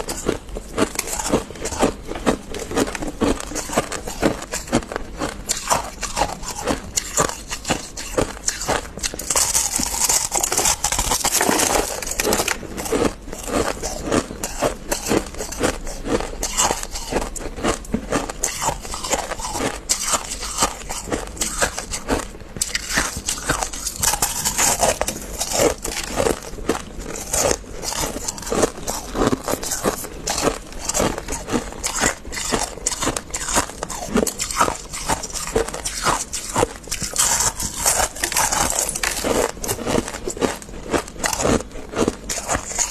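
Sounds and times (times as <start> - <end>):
frost crunching: 0.0 - 42.9.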